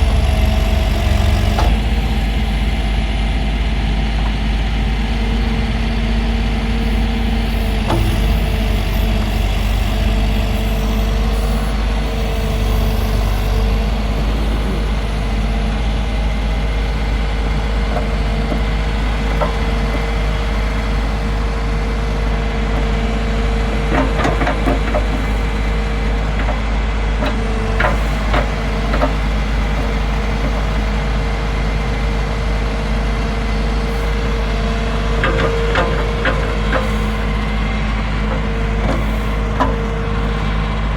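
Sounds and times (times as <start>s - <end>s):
steady whine: 0.0s - 21.7s
diesel engine running: 0.0s - 40.9s.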